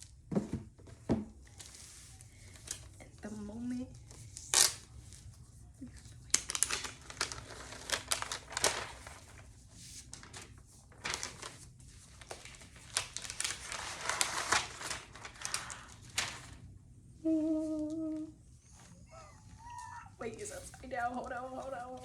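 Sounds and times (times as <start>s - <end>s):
packaging crinkling and tearing: 6.3s - 16.6s.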